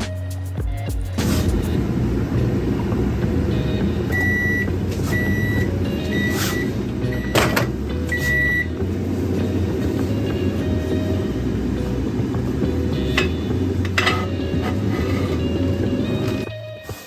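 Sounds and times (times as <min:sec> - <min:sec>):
low hum: 0:01.2 - 0:16.6
microwave oven beeps: 0:01.9 - 0:08.8.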